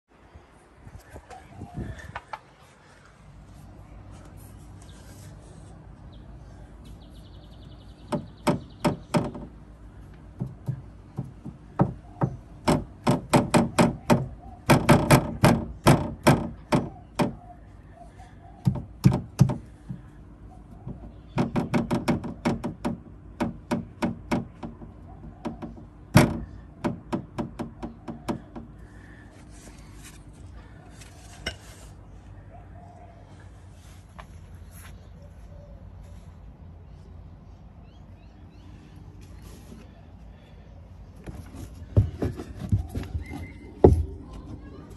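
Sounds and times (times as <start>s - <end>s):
plastic pipe knocking on metal plate: 8.1s - 9.5s, 10.4s - 17.4s, 20.9s - 28.7s.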